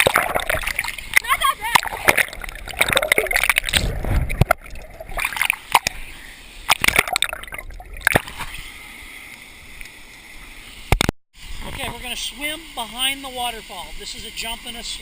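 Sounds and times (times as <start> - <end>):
water splashing and sloshing: 0.0 - 11.1.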